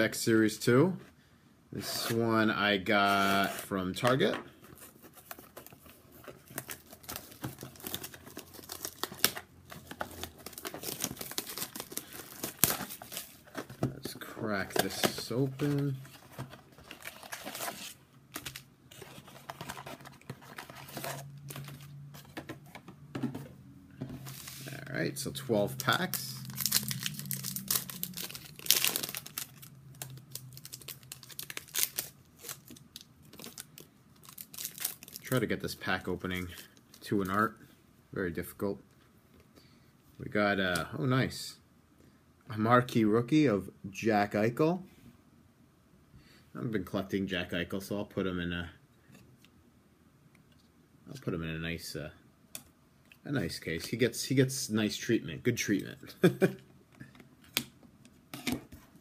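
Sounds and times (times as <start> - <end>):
plastic wrap crinkling: 4.8 - 13.7, 25.6 - 37.5
low hum: 23.5 - 31.5.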